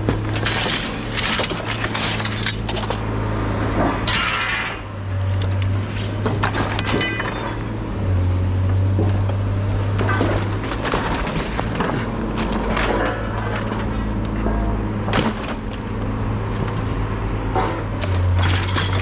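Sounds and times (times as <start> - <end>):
scrap metal clattering: 0.0 - 3.1, 3.8 - 4.9, 5.8 - 7.7, 9.8 - 15.8, 16.5 - 19.0.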